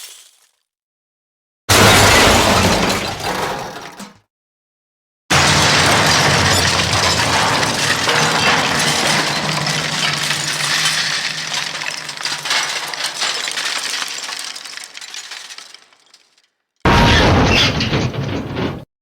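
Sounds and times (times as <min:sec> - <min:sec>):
glassy debris clinking: 0:05.3 - 0:16.5.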